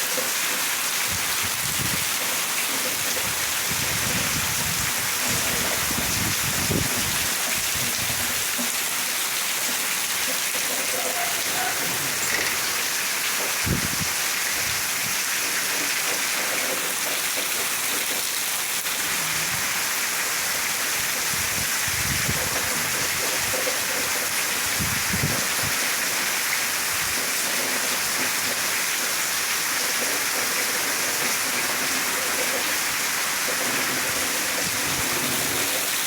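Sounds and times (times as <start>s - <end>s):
heavy rain pouring: 0.0s - 36.0s
wind gusting against microphone: 1.1s - 2.1s, 3.2s - 8.4s, 13.6s - 15.2s, 21.0s - 23.5s, 24.6s - 25.7s, 34.5s - 36.0s.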